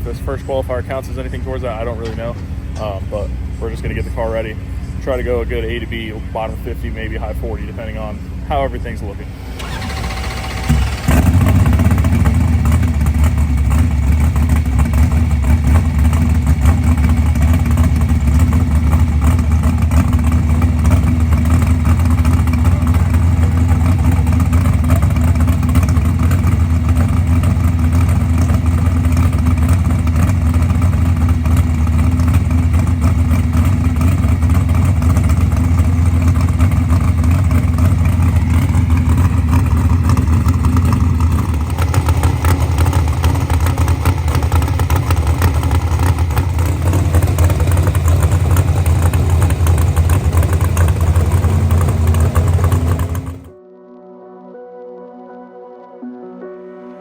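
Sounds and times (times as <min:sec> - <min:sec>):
loud car engine running: 0:00.0 - 0:53.6.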